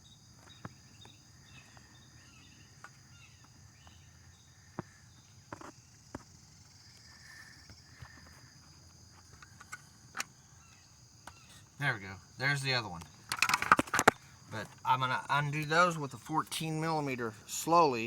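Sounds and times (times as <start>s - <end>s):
insects chirring: 0.0s - 18.0s
handling clicks and knocks: 13.0s - 14.8s.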